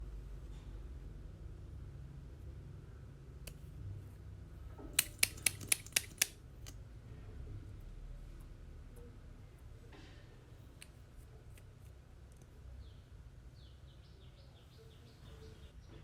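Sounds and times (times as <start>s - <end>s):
low steady hum: 0.0s - 16.0s
sharp clicks: 5.0s - 6.8s.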